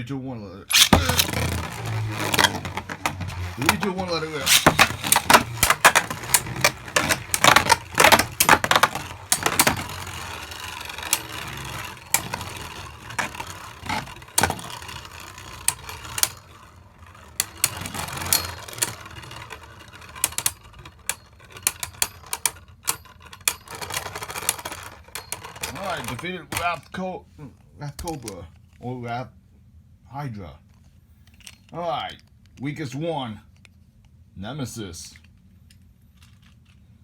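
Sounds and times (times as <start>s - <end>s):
whir of spinning tops: 0.7s - 26.8s
clicks: 0.7s - 26.9s
spinning tops clacking together: 0.7s - 26.9s.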